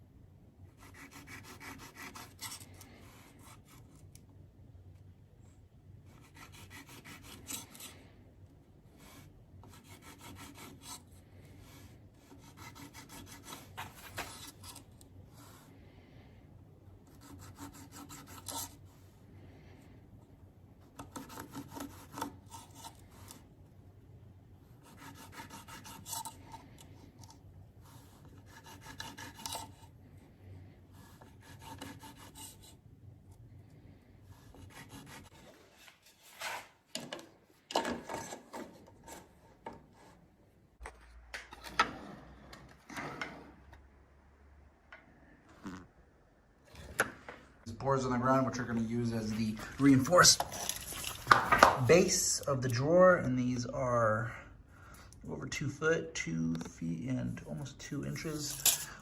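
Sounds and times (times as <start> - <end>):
scraping and rubbing on wood: 34.7 - 37.1.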